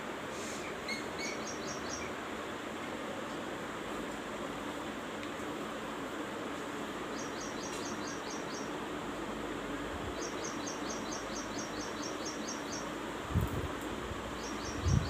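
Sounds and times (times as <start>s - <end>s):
steady background hiss: 0.0s - 15.0s
bird chirping rapidly: 0.8s - 2.1s, 10.2s - 12.9s.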